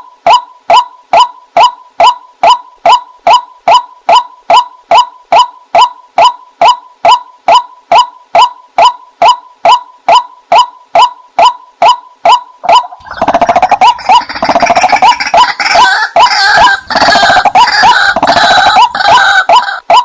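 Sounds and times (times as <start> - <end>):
waterhen calling: 1.2 - 20.0.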